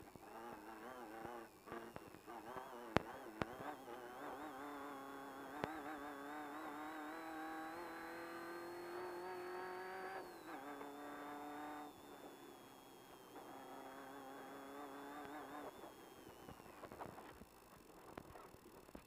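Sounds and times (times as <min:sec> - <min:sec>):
race car engine under load: 0:00.0 - 0:18.4
click: 0:01.2 - 0:04.4, 0:05.5 - 0:05.8, 0:15.1 - 0:19.0.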